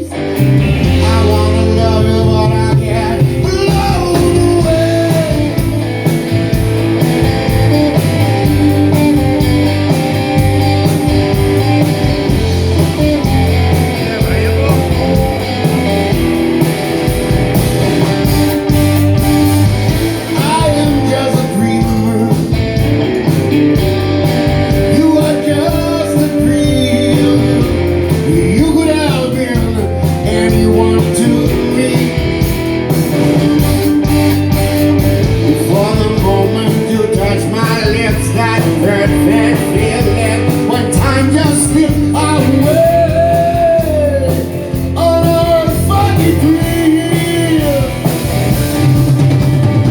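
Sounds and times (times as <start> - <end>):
person singing: 0.0 - 5.9, 19.9 - 22.8, 24.7 - 32.6, 35.3 - 48.3
electric guitar: 0.0 - 49.9
steady drum beat: 0.0 - 49.9.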